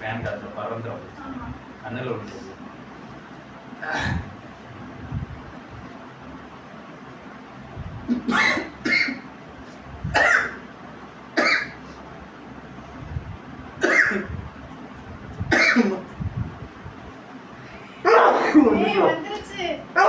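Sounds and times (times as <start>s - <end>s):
person coughing: 3.8s - 4.3s, 8.1s - 9.2s, 10.1s - 10.6s, 11.4s - 11.8s, 13.8s - 14.3s, 15.5s - 16.0s, 18.3s - 18.7s.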